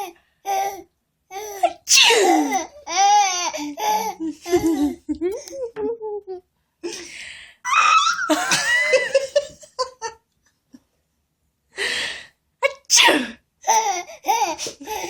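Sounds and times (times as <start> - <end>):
person sneezing: 1.7 - 2.6, 12.8 - 13.4.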